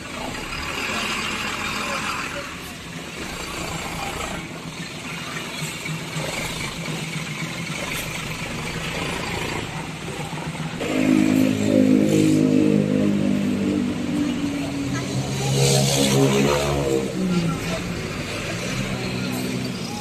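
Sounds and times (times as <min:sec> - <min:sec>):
street traffic engines: 0:00.0 - 0:20.0
bus musical horn: 0:10.8 - 0:14.7.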